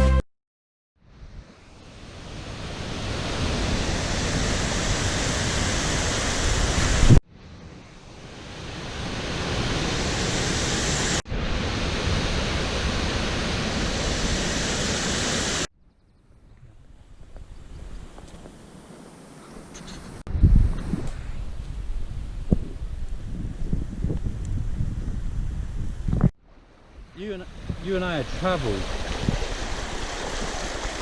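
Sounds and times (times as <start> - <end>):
outdoor air rustle: 1.0 - 27.8
rushing floodwater roar: 27.4 - 31.0.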